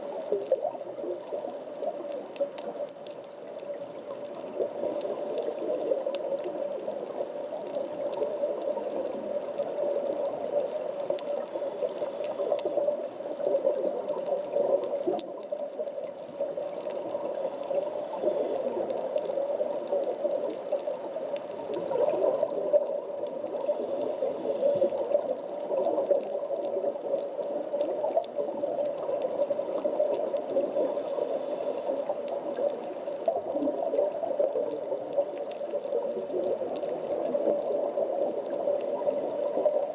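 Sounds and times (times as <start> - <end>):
faint ticks: 0.0 - 39.9
underwater water noise: 0.0 - 39.9.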